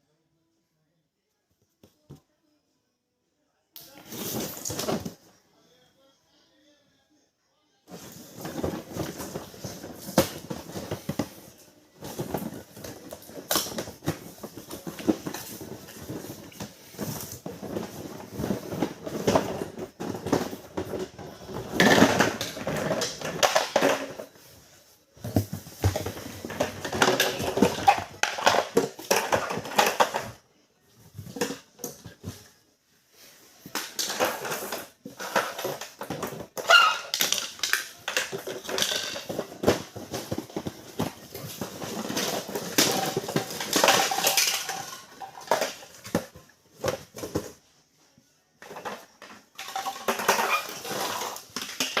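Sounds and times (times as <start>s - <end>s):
plastic toy parts clattering: 25.8s - 30.4s, 33.7s - 47.5s, 48.6s - 52.0s.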